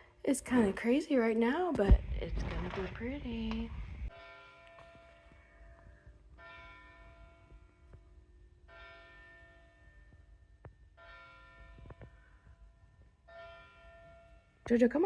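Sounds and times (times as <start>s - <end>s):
faint church bell tolling: 4.1s - 14.7s.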